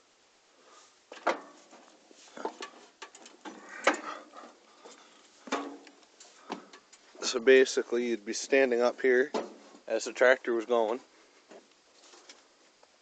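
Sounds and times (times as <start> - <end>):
footsteps on metal steps: 1.1 - 7.2.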